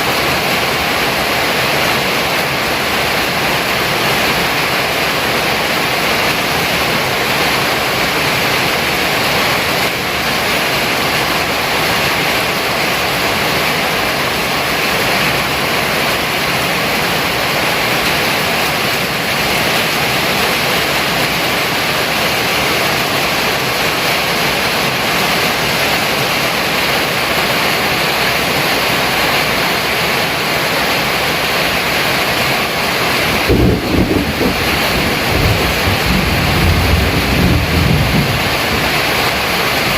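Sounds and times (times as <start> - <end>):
heavy rain pouring: 0.0 - 39.9
wind buffeting microphone: 33.4 - 39.1.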